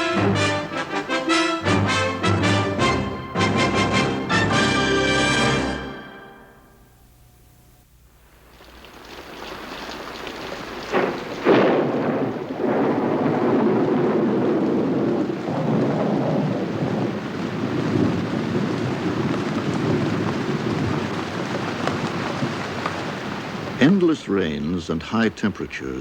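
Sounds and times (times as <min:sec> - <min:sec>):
heavy rain downpour: 0:00.0 - 0:06.4, 0:08.1 - 0:26.0
thunder cracks: 0:08.6 - 0:24.8.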